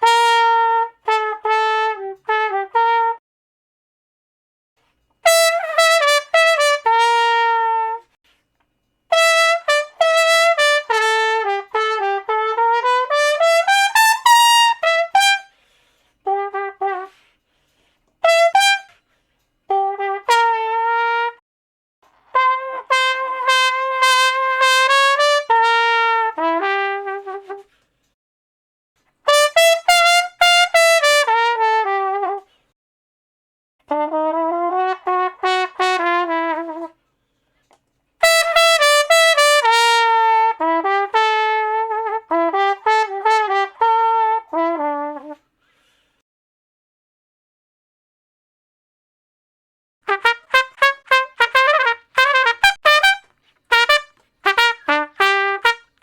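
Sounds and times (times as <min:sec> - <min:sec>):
solo trumpet playing: 0:00.0 - 0:03.2, 0:05.2 - 0:08.2, 0:09.1 - 0:17.3, 0:18.2 - 0:19.0, 0:19.7 - 0:21.4, 0:22.1 - 0:27.7, 0:29.3 - 0:32.5, 0:33.9 - 0:37.0, 0:38.2 - 0:45.4, 0:50.0 - 0:56.0.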